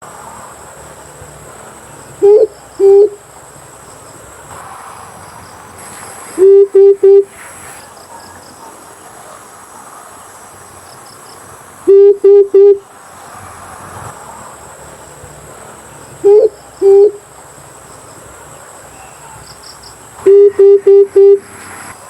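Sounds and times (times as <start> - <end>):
high insect drone: 0.0 - 22.0
dove hooting coos: 2.2 - 3.2, 6.4 - 7.3, 11.9 - 12.8, 16.2 - 17.3, 20.2 - 21.5.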